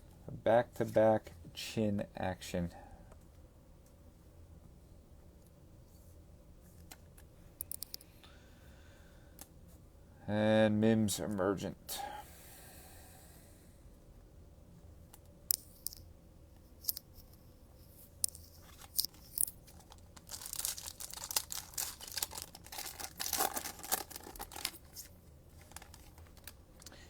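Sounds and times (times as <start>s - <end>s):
foil wrapper tearing and crinkling: 18.6s - 27.0s.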